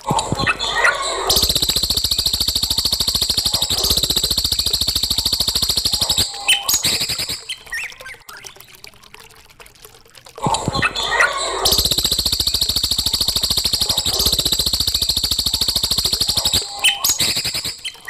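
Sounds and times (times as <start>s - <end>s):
soft bird chirps: 0.7s - 8.5s, 11.6s - 18.0s
songbird fast ticking trill: 1.3s - 7.8s, 11.6s - 18.0s.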